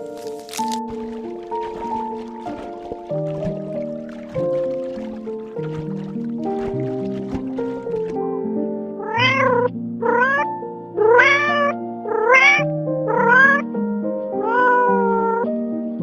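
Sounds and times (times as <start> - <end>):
background music: 0.0 - 16.0
cat meowing: 9.0 - 13.6, 14.4 - 15.4.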